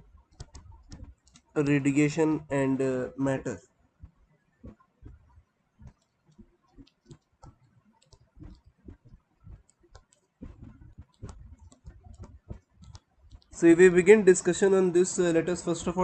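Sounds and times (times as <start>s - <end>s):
light clicks and taps: 0.2s - 1.6s, 4.0s - 14.1s.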